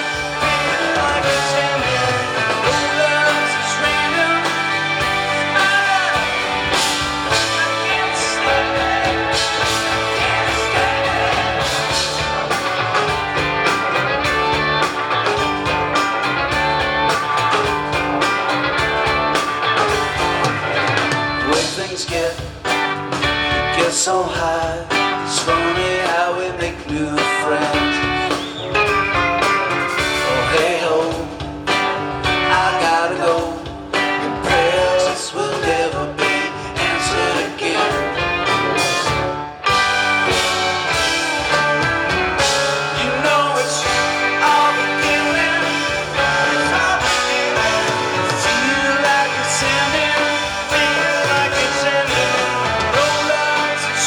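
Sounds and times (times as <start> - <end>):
person singing: 0.0 - 12.6, 30.0 - 31.4, 32.3 - 33.7, 34.4 - 38.9, 41.5 - 54.0
electric guitar: 0.0 - 54.0
rock band playing: 0.0 - 54.0.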